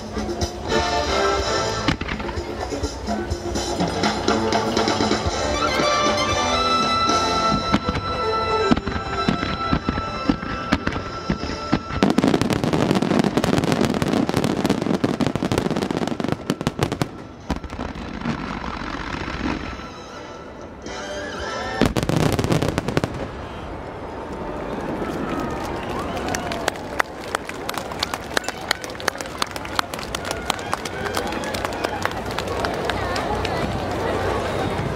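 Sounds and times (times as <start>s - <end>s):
fireworks crackling explosions: 1.4s - 5.2s, 6.2s - 20.1s, 21.8s - 26.6s.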